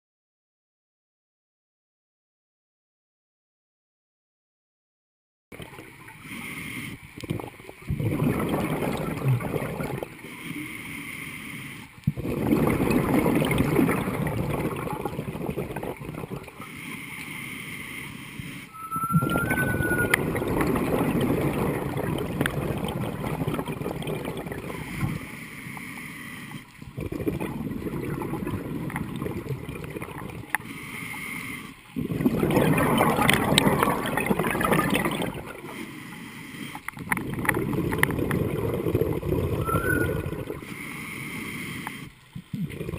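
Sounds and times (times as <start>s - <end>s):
diver breathing through regulator: 6.2s - 7.1s, 10.2s - 12.7s, 16.5s - 18.9s, 24.5s - 26.8s, 30.5s - 32.4s, 35.3s - 37.2s, 39.2s - 42.2s
exhaled bubbles rushing: 7.2s - 10.2s, 12.1s - 16.6s, 18.7s - 25.2s, 26.8s - 30.6s, 31.9s - 35.8s, 36.8s - 40.7s, 42.4s - 42.9s.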